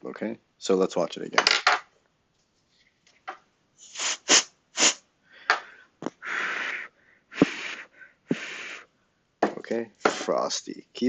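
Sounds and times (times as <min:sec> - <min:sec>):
breath puffs blowing: 0:03.8 - 0:05.0, 0:06.0 - 0:08.9
compressed air hissing bursts: 0:03.8 - 0:05.0, 0:06.2 - 0:08.8.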